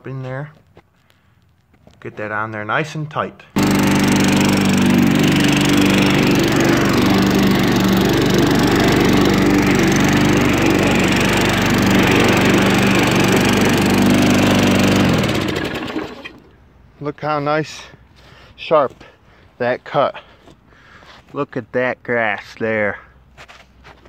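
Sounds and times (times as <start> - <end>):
lawn mower engine mowing grass: 3.6 - 16.6.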